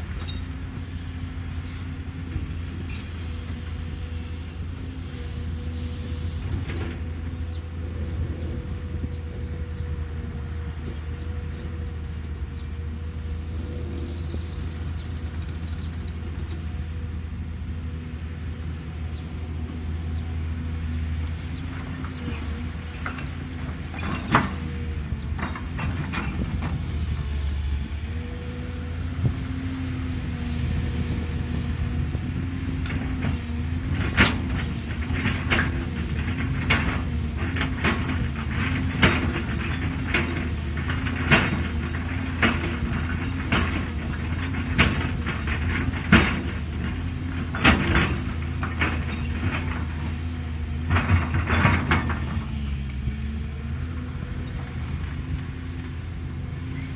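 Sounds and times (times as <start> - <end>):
excavator running: 0.0 - 56.9
knocks and clanks from digging gear: 34.0 - 52.5.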